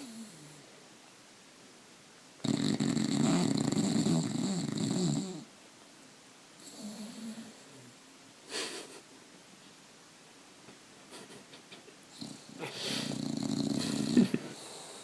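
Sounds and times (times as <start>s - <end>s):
dog snoring: 0.0s - 0.6s, 2.4s - 5.5s, 6.6s - 7.9s, 12.1s - 15.0s.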